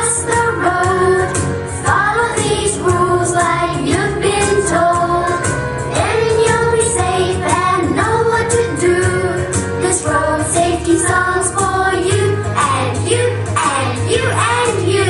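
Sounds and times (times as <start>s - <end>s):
children singing: 0.0s - 15.0s
pop backing track: 0.0s - 15.0s.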